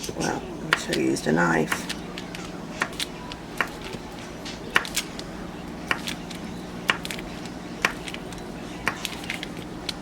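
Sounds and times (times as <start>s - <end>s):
utensil tapping chopping butter: 1.7s - 4.0s, 4.7s - 10.0s.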